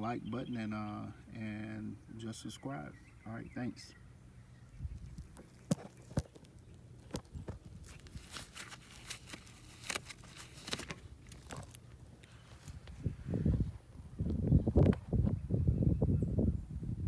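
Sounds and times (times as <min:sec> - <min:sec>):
faint steady hum: 0:00.0 - 0:17.0
short rustles: 0:07.0 - 0:13.8.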